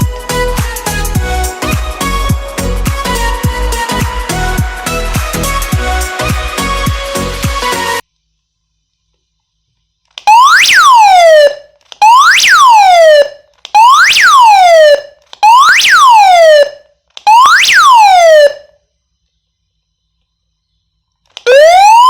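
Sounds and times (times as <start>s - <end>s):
buzzy electronic siren sweeps: 10.3s - 18.7s, 21.5s - 22.0s.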